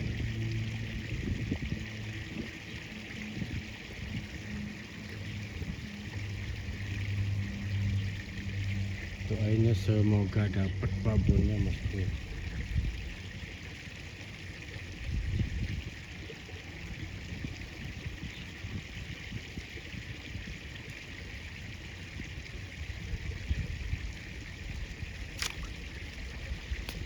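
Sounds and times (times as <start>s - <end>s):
river water running: 0.0s - 27.0s
sharp click: 25.4s - 25.7s.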